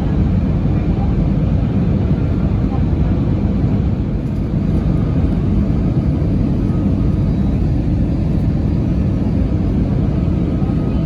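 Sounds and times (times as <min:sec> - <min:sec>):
airplane landing rumble: 0:00.0 - 0:11.0.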